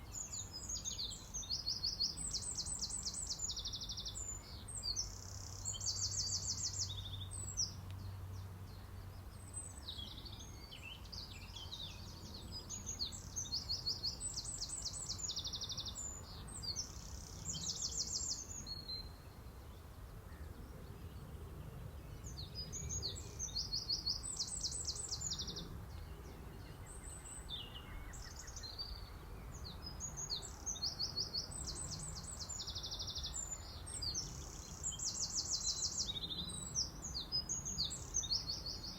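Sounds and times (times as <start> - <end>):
low background noise: 0.0 - 38.9
songbirds trilling: 0.0 - 38.9.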